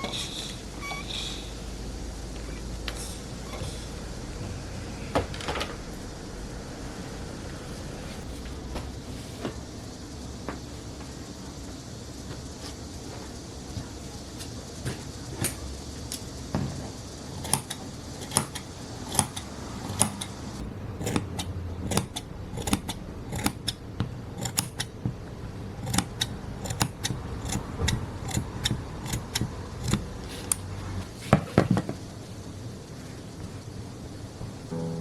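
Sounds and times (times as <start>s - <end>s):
scissors snipping fabric: 21.9s - 23.7s, 24.4s - 24.9s, 25.8s - 27.6s.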